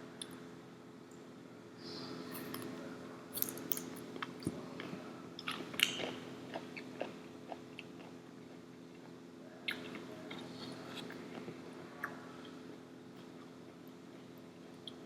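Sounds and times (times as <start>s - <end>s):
person chewing: 3.4s - 8.6s.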